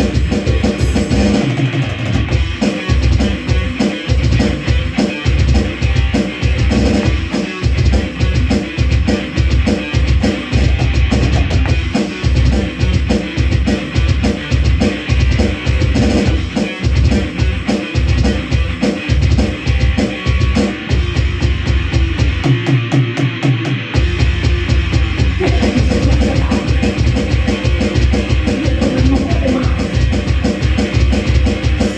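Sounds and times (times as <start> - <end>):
bass: 0.0 - 31.9
drum kit: 0.0 - 31.9
guitar: 0.0 - 31.9.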